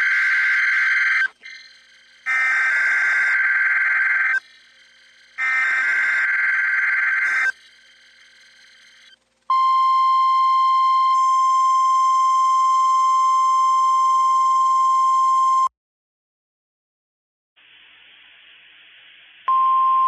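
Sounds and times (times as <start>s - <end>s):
steady loud alarm tone: 0.0s - 15.7s.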